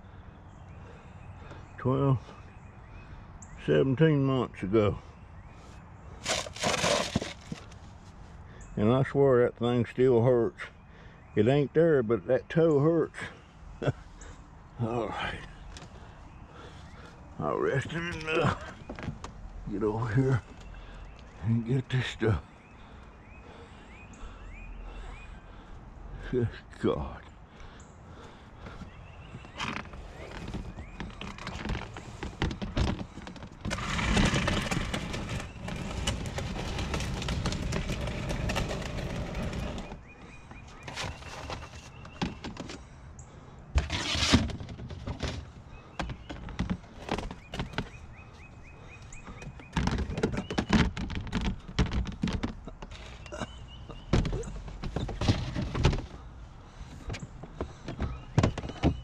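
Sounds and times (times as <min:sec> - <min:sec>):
junk thumping and clattering: 0:06.2 - 0:07.8, 0:28.2 - 0:42.9, 0:43.7 - 0:59.0.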